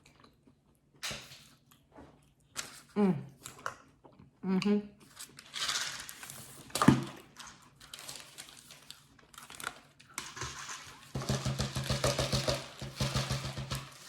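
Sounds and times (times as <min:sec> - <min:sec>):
food packaging crinkling: 0:05.0 - 0:14.0.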